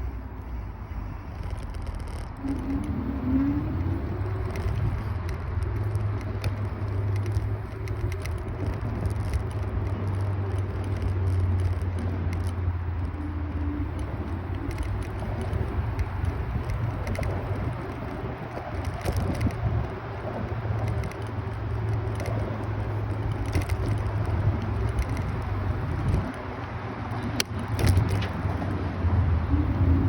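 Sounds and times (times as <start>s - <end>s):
road rumble: 0.0s - 30.0s
wind buffeting: 0.0s - 30.0s
small clicks and rattles: 1.2s - 28.9s
wavering tone: 2.4s - 4.9s.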